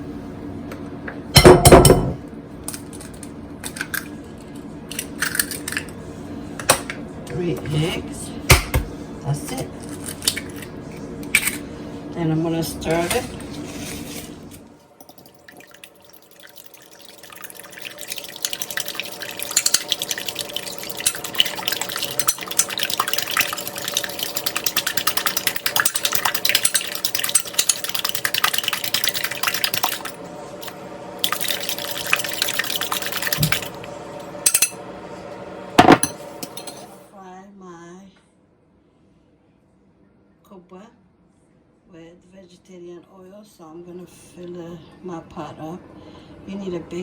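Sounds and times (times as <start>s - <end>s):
wet sloshing: 15.0s - 34.0s
whisk clicking against bowl: 16.2s - 30.1s.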